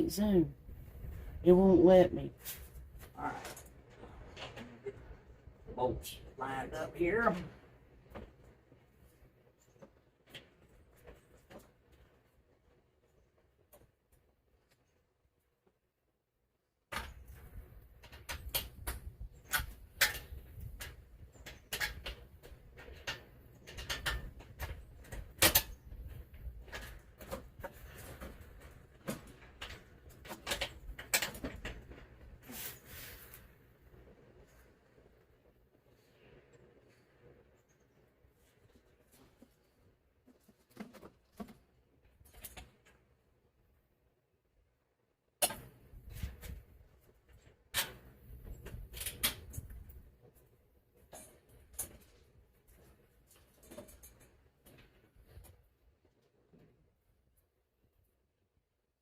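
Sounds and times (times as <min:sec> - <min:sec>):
tools and metal parts clanking: 0:16.9 - 0:32.9, 0:45.4 - 0:50.0, 0:51.0 - 0:55.6.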